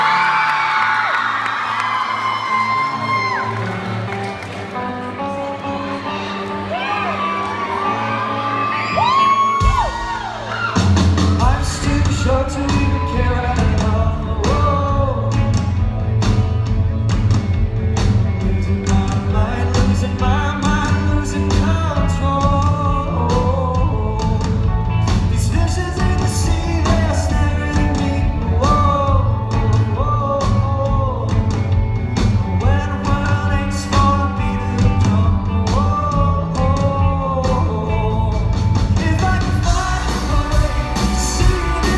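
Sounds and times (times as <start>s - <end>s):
live rock band playing: 2.6s - 41.9s
bass and drums beat: 9.0s - 41.9s
man singing lead: 9.2s - 17.0s, 18.2s - 41.9s.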